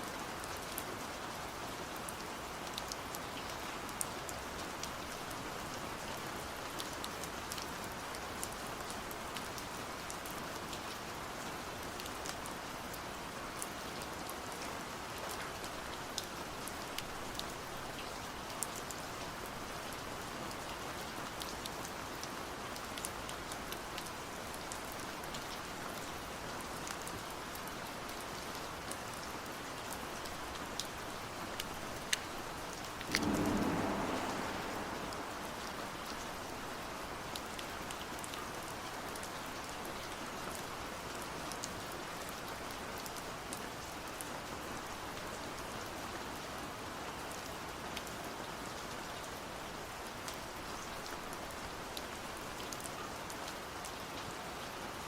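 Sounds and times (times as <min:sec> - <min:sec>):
steady rain: 0:00.0 - 0:55.0
low swell: 0:33.1 - 0:36.8.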